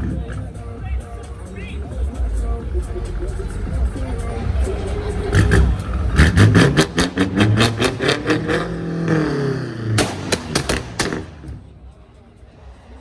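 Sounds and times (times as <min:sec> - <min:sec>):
car engine revving hard: 0:03.7 - 0:11.6
exhaust pops and cracks: 0:10.0 - 0:11.7.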